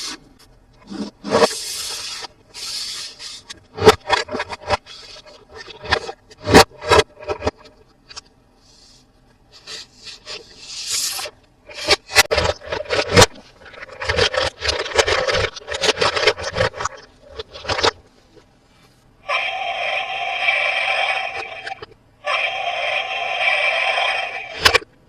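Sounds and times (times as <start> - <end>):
hands scraping toy packaging: 0.8 - 7.5, 9.6 - 18.0.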